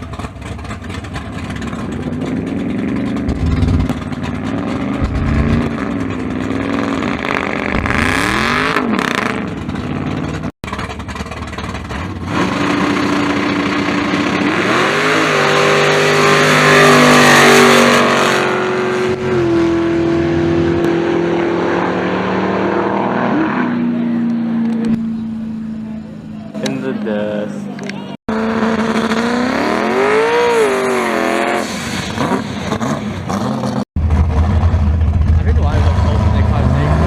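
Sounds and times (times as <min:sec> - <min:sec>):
race car engines revving: 0:00.0 - 0:37.0.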